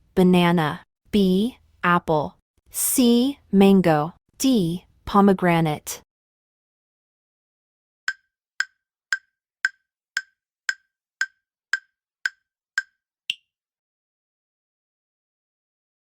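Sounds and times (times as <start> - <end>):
clock-like timer ticks: 8.1 - 13.4.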